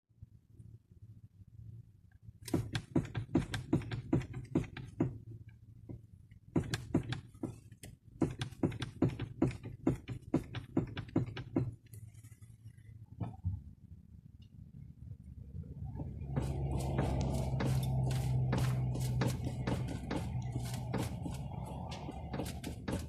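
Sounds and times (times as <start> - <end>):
steering rack knocking: 2.5 - 5.2, 5.9 - 11.8, 15.9 - 23.0
low steady hum: 3.8 - 23.0.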